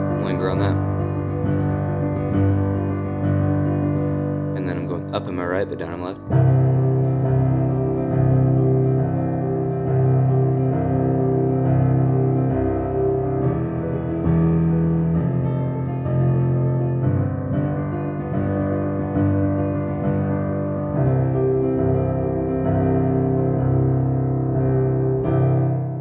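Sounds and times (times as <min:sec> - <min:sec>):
piano playing arpeggios: 0:00.0 - 0:26.0.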